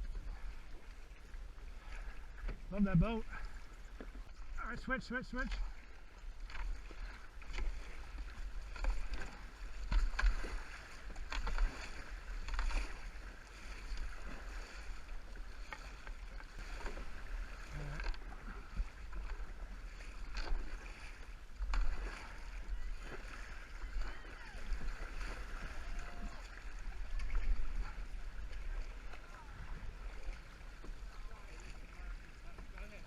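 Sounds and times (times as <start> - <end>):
paddle strokes in river water: 0.0 - 33.0.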